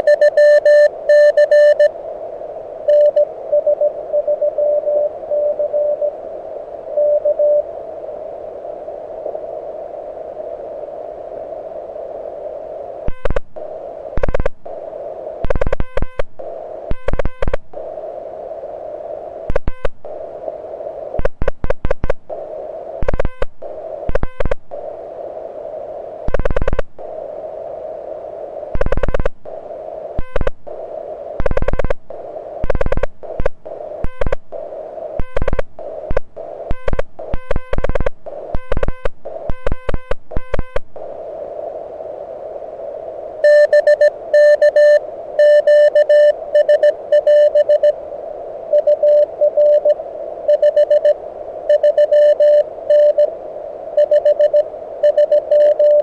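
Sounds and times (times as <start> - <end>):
morse code sidetone beeping: 0.0 - 1.9, 2.9 - 6.1, 15.4 - 16.2, 16.9 - 17.6, 23.0 - 24.6, 26.3 - 26.8, 28.8 - 29.3, 30.2 - 30.5, 31.4 - 32.0, 32.6 - 34.4, 35.2 - 40.8, 43.4 - 48.0, 48.7 - 53.3, 54.0 - 56.0
radio band hiss: 0.0 - 56.0.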